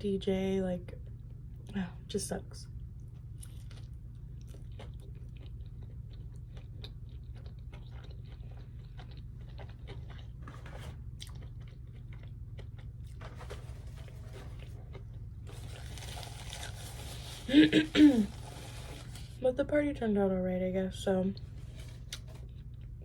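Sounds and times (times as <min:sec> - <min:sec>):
steady low hum: 0:00.0 - 0:23.0
person chewing and crunching: 0:03.0 - 0:19.4, 0:21.4 - 0:23.0.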